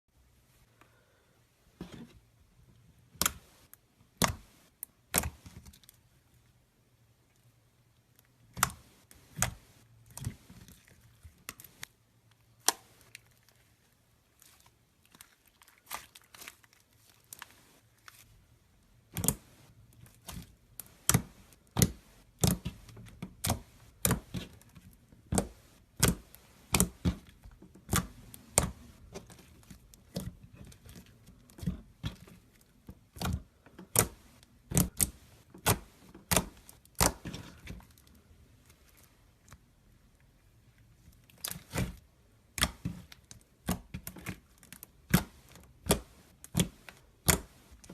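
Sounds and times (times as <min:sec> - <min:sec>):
sticky slime pops and clicks: 0:42.5 - 0:43.0.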